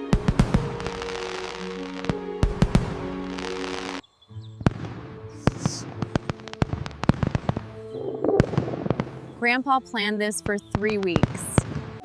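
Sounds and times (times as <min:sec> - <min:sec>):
fireworks bangs and pops: 0:00.0 - 0:04.0, 0:04.6 - 0:09.4, 0:10.5 - 0:12.0
background music: 0:00.0 - 0:12.0
firework hiss: 0:00.1 - 0:04.0, 0:04.7 - 0:07.7.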